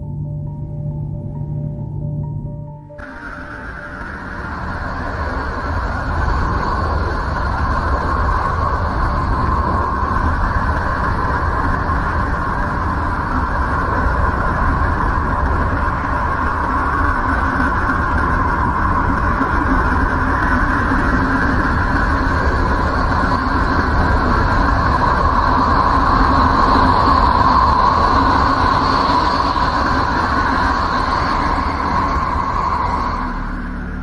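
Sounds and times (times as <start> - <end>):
rumbling noise drone: 0.0 - 34.0
high hissing band: 3.0 - 34.0.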